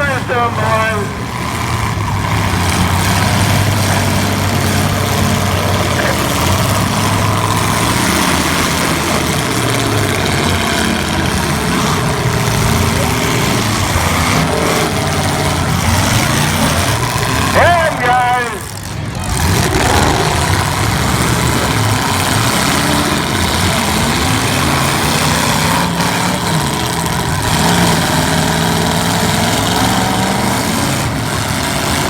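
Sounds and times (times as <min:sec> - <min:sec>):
many car engines running: 0:00.0 - 0:32.0.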